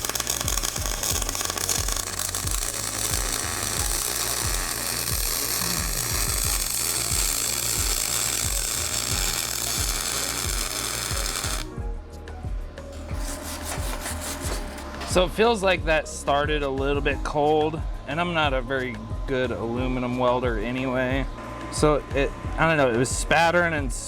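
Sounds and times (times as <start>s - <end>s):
welding arc hissing and crackling: 0.0s - 11.7s, 13.0s - 15.3s.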